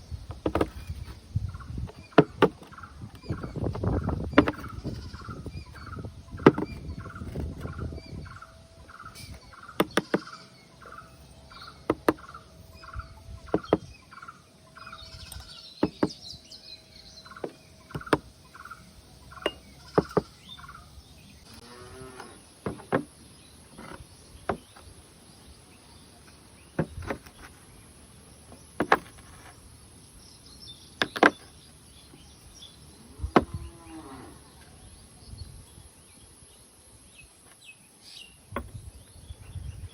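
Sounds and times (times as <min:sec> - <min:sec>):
chirping calls: 0:00.0 - 0:27.6.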